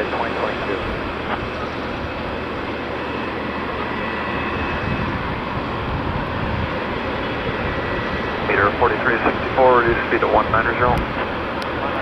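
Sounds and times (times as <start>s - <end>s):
jet engines running: 0.0s - 12.0s.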